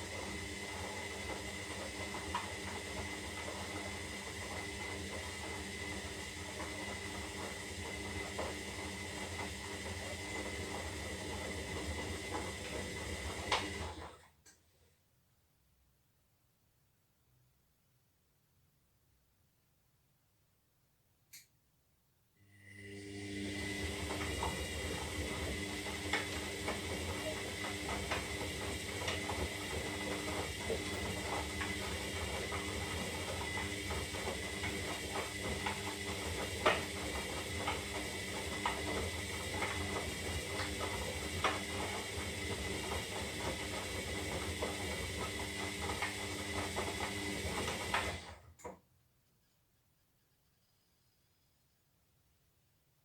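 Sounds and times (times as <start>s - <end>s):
washing machine motor whining: 0.0s - 14.2s, 22.5s - 48.6s.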